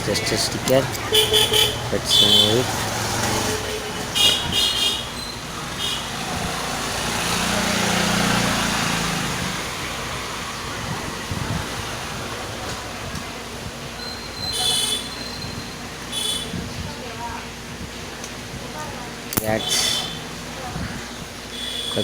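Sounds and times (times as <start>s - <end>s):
vehicle passing: 0.0s - 14.0s
car horn toots: 1.0s - 2.8s, 3.4s - 6.3s, 16.1s - 16.6s, 19.4s - 20.3s, 21.5s - 22.0s.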